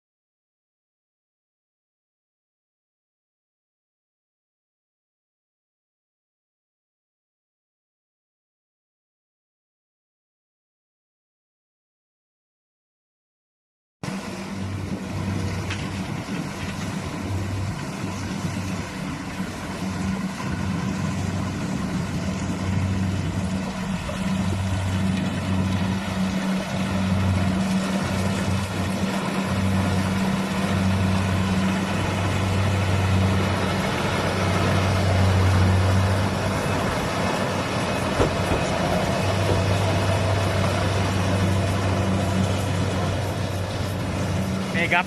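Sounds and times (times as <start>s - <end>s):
combine harvester engine hum: 14.0s - 45.0s
machinery noise: 14.1s - 45.0s.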